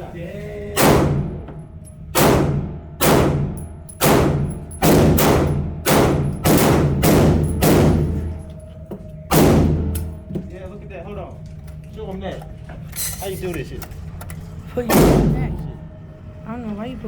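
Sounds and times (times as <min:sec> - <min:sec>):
gunshots with ringing echo: 0:00.8 - 0:01.5, 0:02.1 - 0:08.5, 0:09.3 - 0:10.2, 0:14.9 - 0:15.8.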